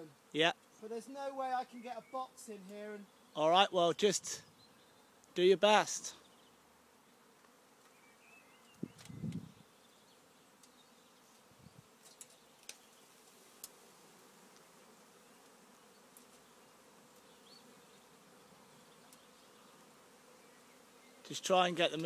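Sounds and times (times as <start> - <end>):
honeybee swarm humming: 4.4 - 22.0.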